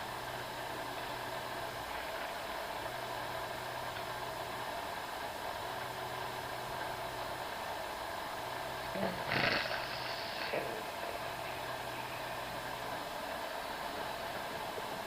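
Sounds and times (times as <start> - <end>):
steady background hiss: 0.0 - 15.0
person snoring: 9.0 - 10.8.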